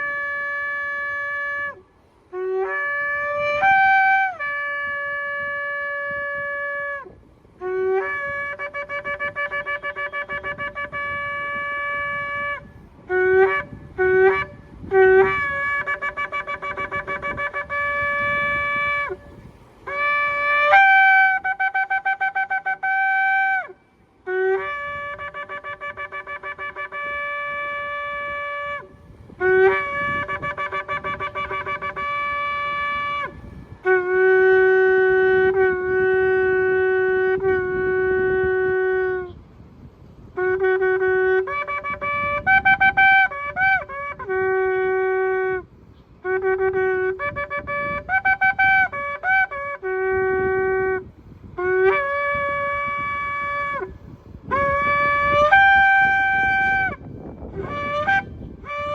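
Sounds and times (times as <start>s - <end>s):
shofar blasts: 0.0s - 39.5s, 40.2s - 58.9s.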